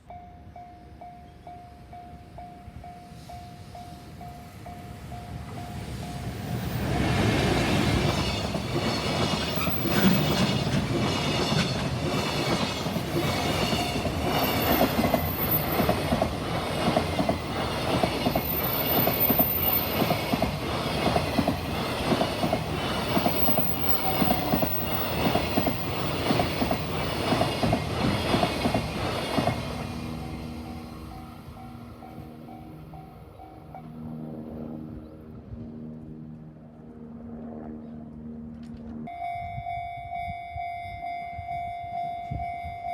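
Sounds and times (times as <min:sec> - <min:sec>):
train wheels clickety-clack: 0:05.6 - 0:30.2.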